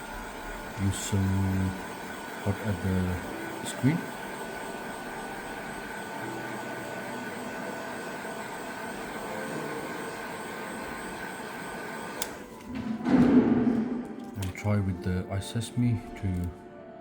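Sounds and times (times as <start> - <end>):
switch click: 12.2 - 12.4.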